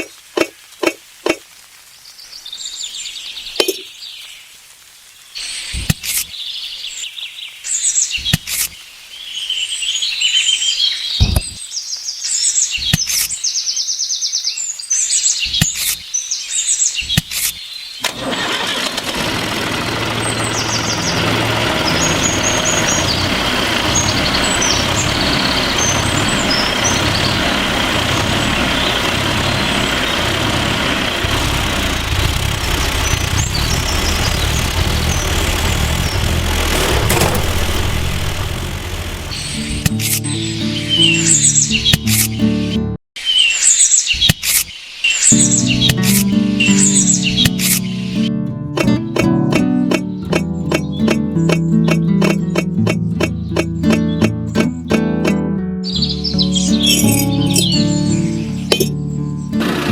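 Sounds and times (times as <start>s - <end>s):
small engine running: 18.0s - 42.4s, 45.4s - 48.2s, 56.8s - 59.9s
birds chirping: 19.5s - 54.9s, 55.8s - 59.6s
sharp clicks: 21.8s - 40.3s, 45.8s - 47.9s.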